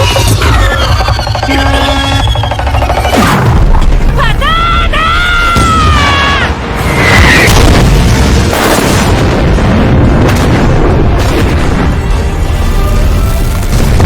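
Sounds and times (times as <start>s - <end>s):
pitched tone: 0.0s - 3.4s
music: 0.0s - 14.0s
explosion blast and rumble: 3.0s - 14.0s.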